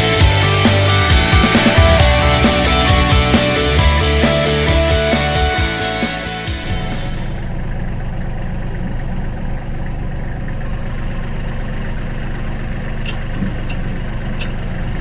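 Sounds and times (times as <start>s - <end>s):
tractor engine idling: 0.0s - 15.0s.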